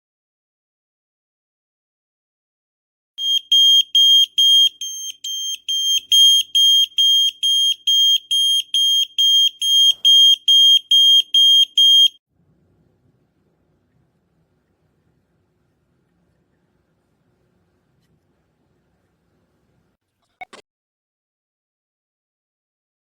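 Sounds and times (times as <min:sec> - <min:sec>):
smoke alarm beeping: 0:03.2 - 0:12.2.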